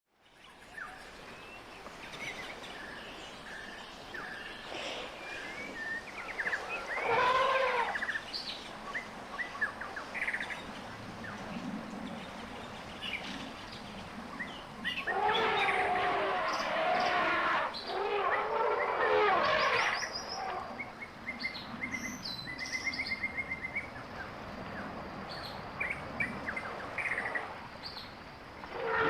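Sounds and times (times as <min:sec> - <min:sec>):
loud arching bird call: 0:07.0 - 0:08.2, 0:28.7 - 0:29.0.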